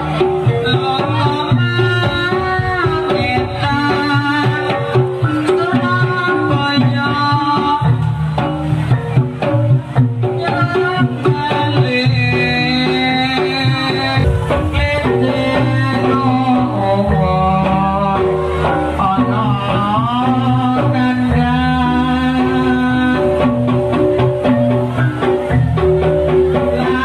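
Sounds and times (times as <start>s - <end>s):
hand drums beating: 0.0s - 27.0s
melodic lines bending in pitch: 12.2s - 19.1s.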